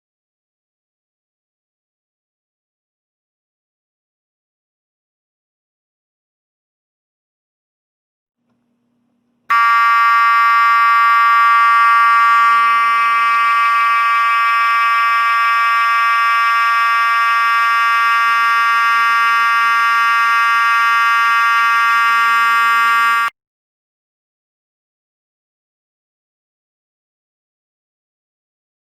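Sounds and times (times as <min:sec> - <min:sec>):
fire alarm horn buzzing: 0:09.5 - 0:23.3.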